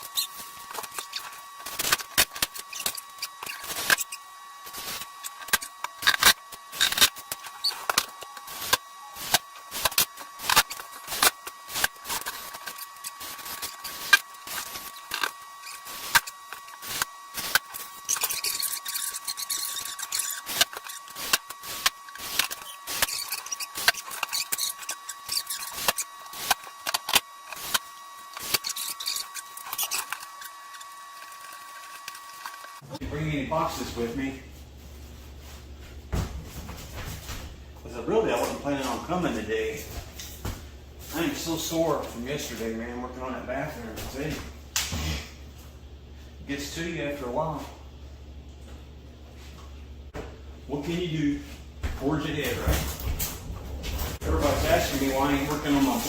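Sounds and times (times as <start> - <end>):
tools clicking and scraping: 0.0 - 32.8.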